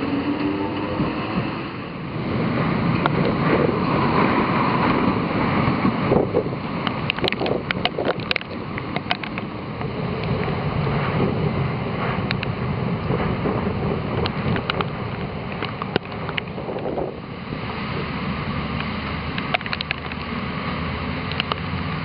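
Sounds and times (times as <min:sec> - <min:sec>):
wind and rain rushing: 0:00.0 - 0:22.0
wind buffeting microphone: 0:00.0 - 0:22.0
sharp ticks: 0:06.8 - 0:09.5, 0:12.3 - 0:12.6, 0:14.2 - 0:16.6, 0:18.8 - 0:20.3, 0:21.3 - 0:21.7.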